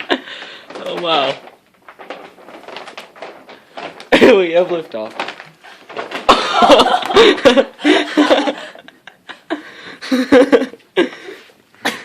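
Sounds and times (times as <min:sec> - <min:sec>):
people laughing: 0:06.3 - 0:10.8.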